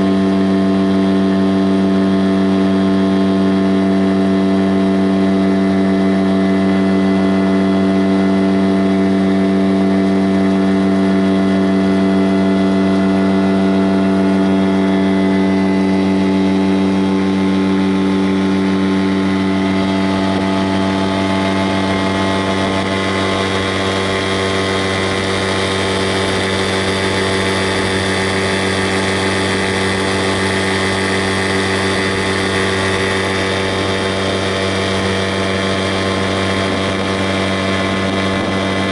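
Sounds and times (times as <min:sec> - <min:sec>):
engine humming steadily: 0:00.0 - 0:38.9.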